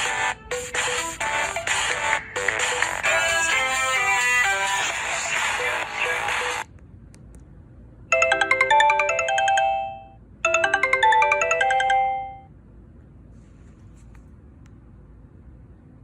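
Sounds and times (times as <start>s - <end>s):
mobile phone ringtone: 0.0s - 3.9s, 8.1s - 12.5s.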